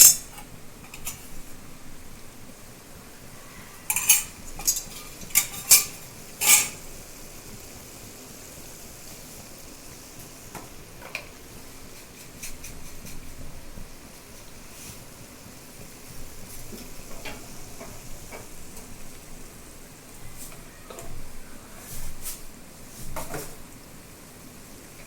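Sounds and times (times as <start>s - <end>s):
metal utensil clinking on pot: 0.0s - 1.4s, 3.9s - 6.9s
frying sizzle: 0.0s - 25.0s.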